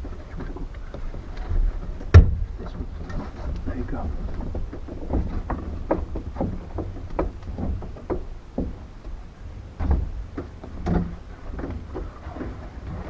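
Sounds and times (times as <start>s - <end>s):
soft knocks: 0.0s - 9.2s
canvas rustling and scraping: 0.0s - 9.3s, 10.0s - 13.0s.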